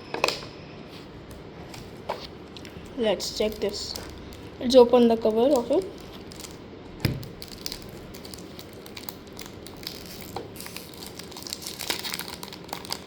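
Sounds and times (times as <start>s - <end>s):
plastic crinkles and clicks: 2.5s - 4.5s, 5.2s - 13.0s.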